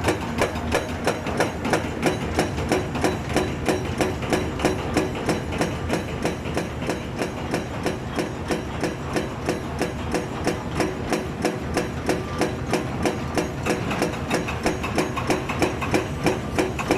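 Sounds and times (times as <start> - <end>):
hydraulic breaker hammer pounding: 0.0 - 16.9.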